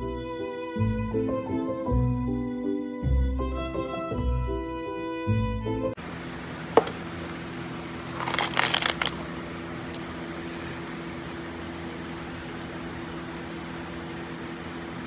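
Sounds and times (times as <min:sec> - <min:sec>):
steady mechanical hum: 0:06.0 - 0:15.0
crackling handling noise: 0:06.7 - 0:15.0.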